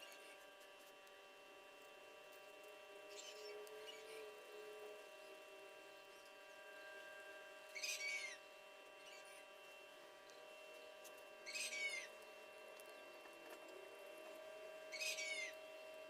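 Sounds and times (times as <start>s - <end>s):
faint steady hum: 0.0s - 16.0s
high animal calls: 7.7s - 8.4s, 11.4s - 12.2s, 14.9s - 15.6s.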